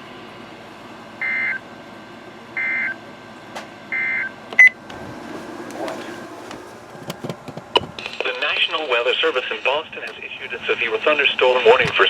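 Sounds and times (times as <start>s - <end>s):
radio hiss: 7.8s - 12.0s.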